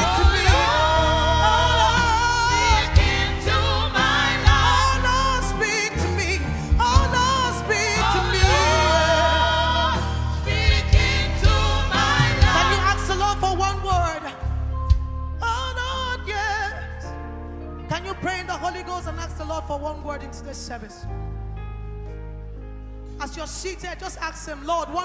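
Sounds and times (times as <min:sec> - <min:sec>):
person singing with vibrato: 0:00.0 - 0:14.7
band with bass and drums: 0:00.0 - 0:15.4.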